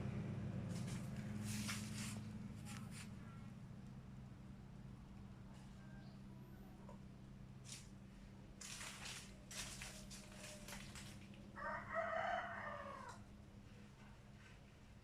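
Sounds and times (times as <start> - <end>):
noisy rustling: 0.6 - 3.4, 7.6 - 11.6
rooster crowing: 5.6 - 6.2, 11.5 - 13.3.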